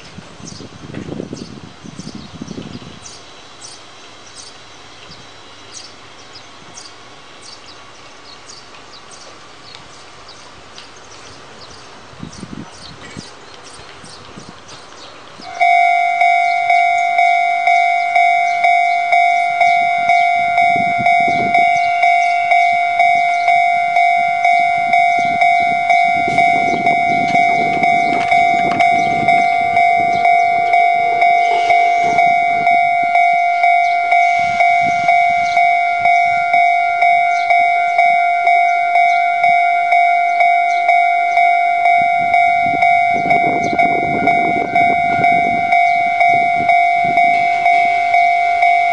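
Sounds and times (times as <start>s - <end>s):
level crossing warning bell: 15.4s - 48.9s.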